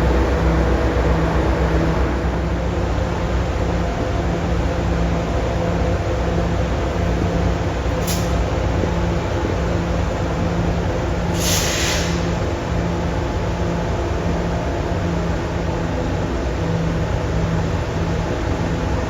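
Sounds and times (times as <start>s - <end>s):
locomotive engine idling: 0.0s - 11.3s
air hiss: 11.3s - 12.4s.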